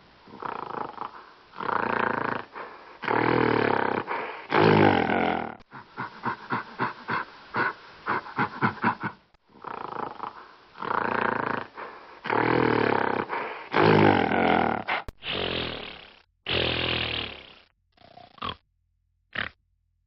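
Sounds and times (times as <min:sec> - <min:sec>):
gorilla grunting and growling: 0:00.3 - 0:15.7.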